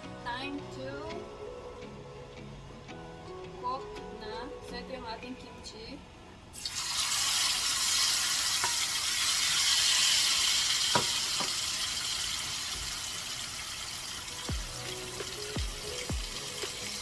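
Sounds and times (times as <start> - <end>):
food sizzling in hot oil: 6.5 - 17.0.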